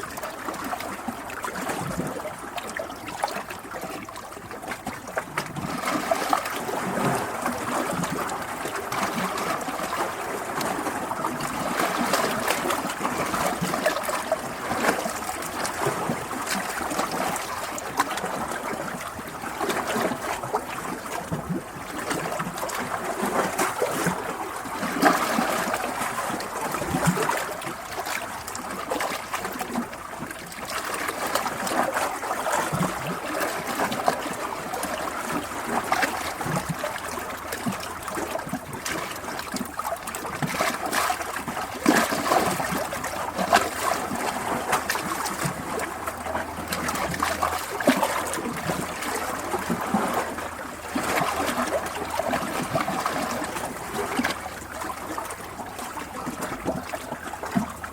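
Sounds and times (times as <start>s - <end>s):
water trickling and splashing: 0.0s - 57.9s.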